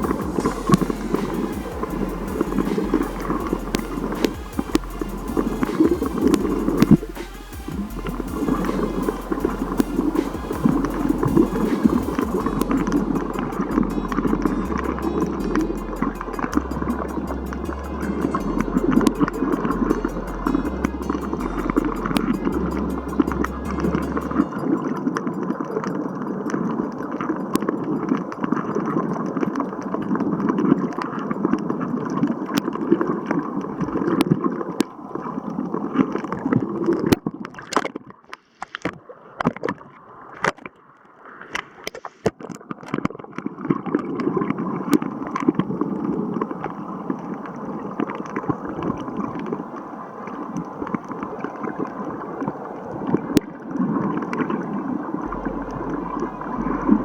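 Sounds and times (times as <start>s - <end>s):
sea water sloshing and gurgling: 24.4s - 57.0s.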